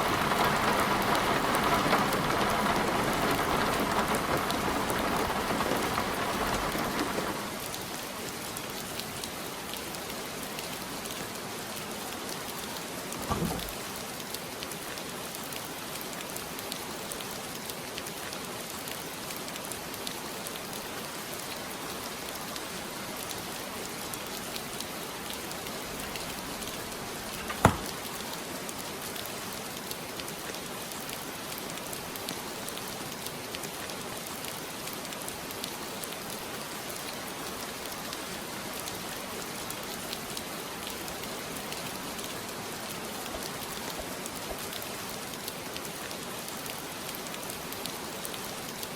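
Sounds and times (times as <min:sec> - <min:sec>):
heavy rain ticking on a surface: 0:00.0 - 0:48.9
sharp knock: 0:27.5 - 0:27.9.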